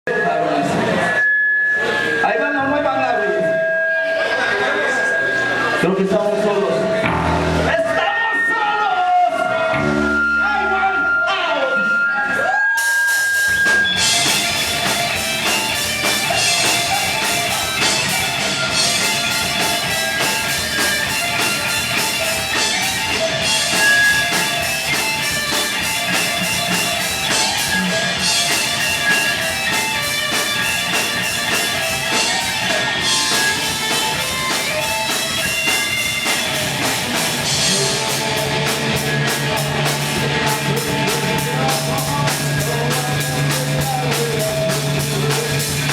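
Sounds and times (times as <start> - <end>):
distorted electric guitars: 0.7 - 45.9
fast drum-kit beat: 7.0 - 8.1, 12.8 - 45.9.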